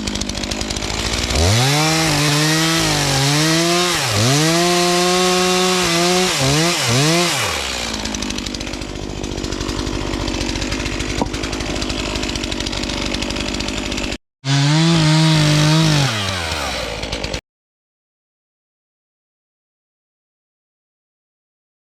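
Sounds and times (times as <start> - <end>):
chainsaw revving and idling: 0.0 - 17.4.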